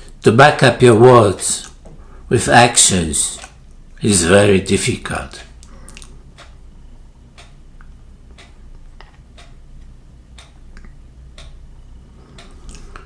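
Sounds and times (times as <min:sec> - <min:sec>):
low steady hum: 0:00.0 - 0:13.0
soft ticks: 0:05.6 - 0:06.6, 0:07.4 - 0:11.6, 0:12.4 - 0:12.8.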